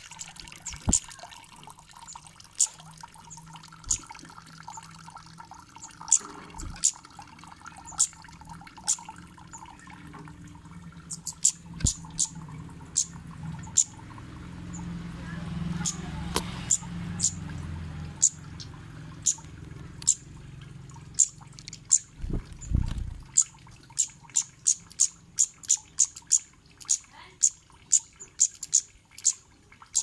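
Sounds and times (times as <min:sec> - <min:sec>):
low steady hum: 0:00.0 - 0:30.0
bird chip calls: 0:08.8 - 0:09.9, 0:11.0 - 0:14.0, 0:15.7 - 0:20.3, 0:21.0 - 0:30.0.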